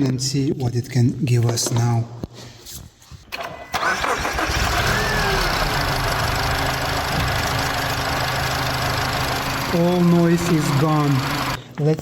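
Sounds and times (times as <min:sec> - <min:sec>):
car engine starting: 0:03.7 - 0:11.6
car engine idling: 0:04.5 - 0:11.6.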